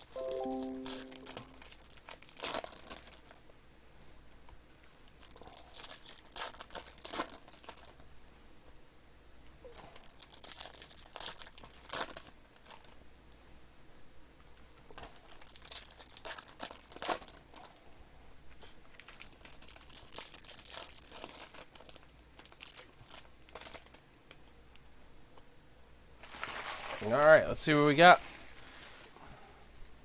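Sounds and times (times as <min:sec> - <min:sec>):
wrappers crinkling and tearing: 0:02.1 - 0:03.4, 0:04.8 - 0:08.0, 0:09.7 - 0:13.1, 0:14.6 - 0:17.8, 0:18.6 - 0:24.4, 0:26.2 - 0:27.2.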